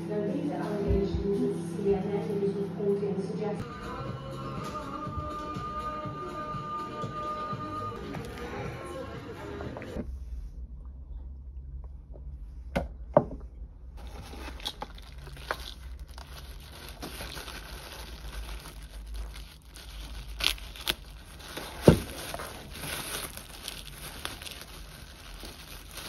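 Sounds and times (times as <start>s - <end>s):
crinkling handling noise: 14.0s - 26.0s.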